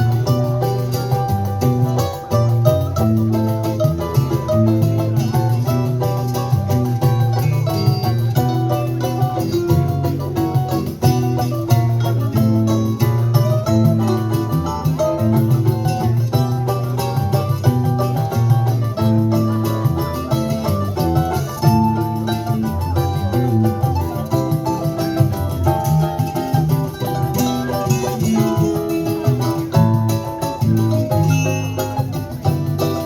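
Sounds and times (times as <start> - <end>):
plucked string instrument music: 0.0 - 33.0.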